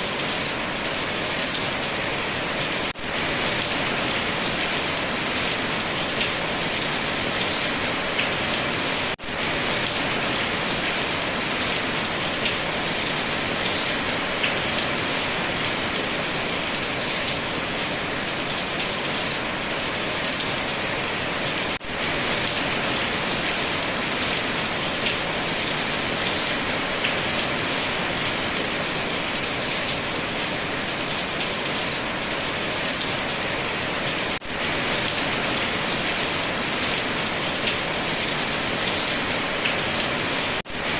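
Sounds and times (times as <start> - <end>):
heavy rain falling: 0.0 - 40.9.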